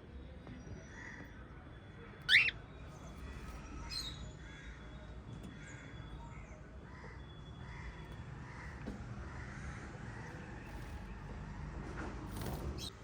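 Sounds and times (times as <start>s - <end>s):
parrots chirping: 2.2s - 2.6s
parrot squawking: 2.3s - 2.6s.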